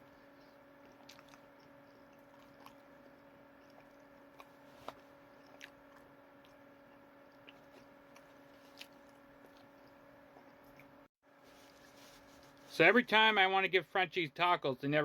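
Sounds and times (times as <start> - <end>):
person chewing food: 0.0 - 12.5
steady low hum: 0.0 - 15.0
mouth clicks and crunches: 0.8 - 11.0.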